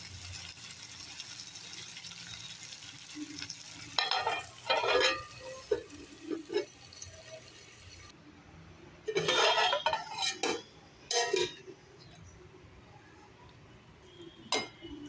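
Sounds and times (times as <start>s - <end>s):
spoon scraping a cooking pan: 3.9s - 7.4s, 9.1s - 11.7s
spoon clinking on pan: 4.0s - 7.0s, 9.2s - 11.6s, 14.5s - 14.9s.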